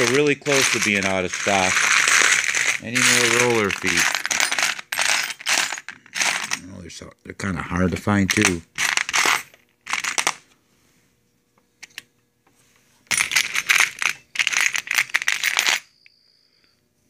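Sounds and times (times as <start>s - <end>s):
small metal parts jangling: 0.0s - 6.7s, 8.3s - 10.4s, 13.1s - 15.9s.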